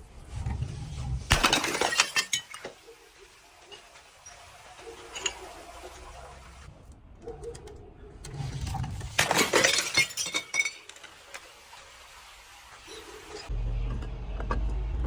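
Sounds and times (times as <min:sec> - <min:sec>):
glass bottle shattering: 0:01.3 - 0:02.8, 0:05.0 - 0:05.6, 0:09.0 - 0:11.4.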